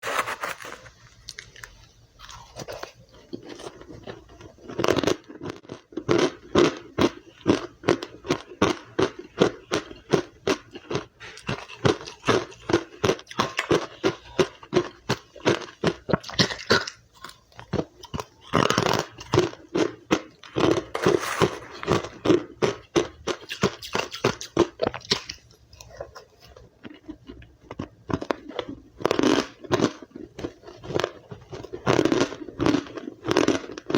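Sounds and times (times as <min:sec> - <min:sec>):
crunching and chewing ice: 0:00.0 - 0:33.9.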